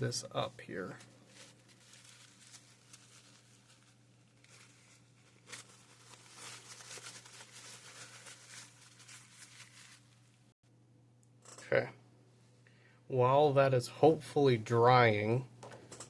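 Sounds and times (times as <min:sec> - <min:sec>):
hands rustling and scratching plastic: 0:00.3 - 0:10.4.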